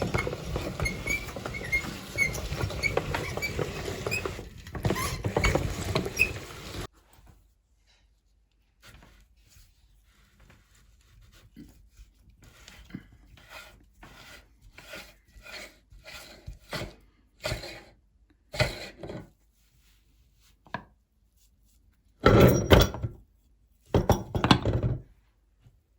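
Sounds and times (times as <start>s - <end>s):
meat grinder grinding ice: 0.0s - 6.9s.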